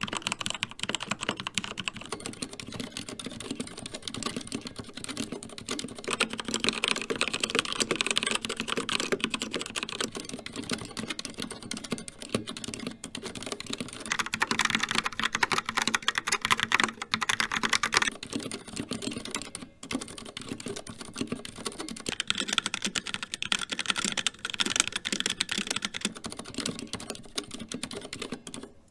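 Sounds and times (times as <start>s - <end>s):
fast typing on mechanical keyboards: 0.0s - 28.9s.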